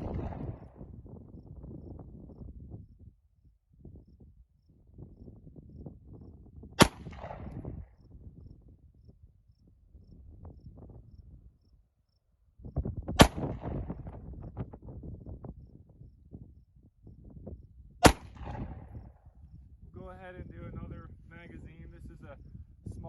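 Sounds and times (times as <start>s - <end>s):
pistol shots with echo: 0.0s - 0.8s, 6.8s - 7.8s, 13.2s - 14.0s, 18.0s - 18.9s.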